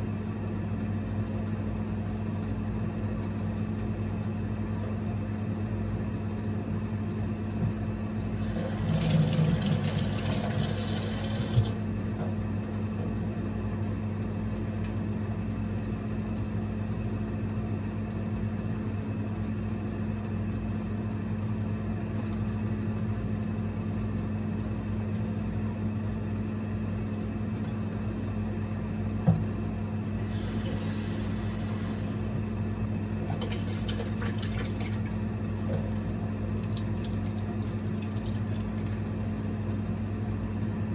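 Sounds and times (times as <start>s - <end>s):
low electrical hum: 0.0s - 40.9s
running water: 8.4s - 11.9s.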